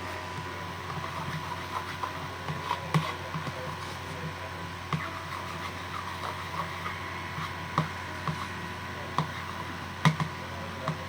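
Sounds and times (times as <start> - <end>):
spoon stirring thick slime: 0.9 - 8.6.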